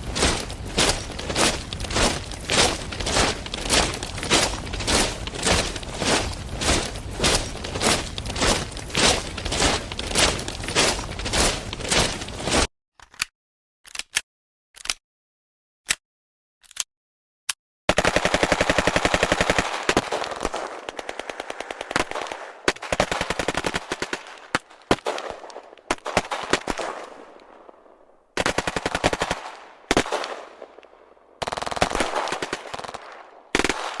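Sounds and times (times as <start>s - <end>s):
automatic machine-gun fire: 17.9s - 24.3s.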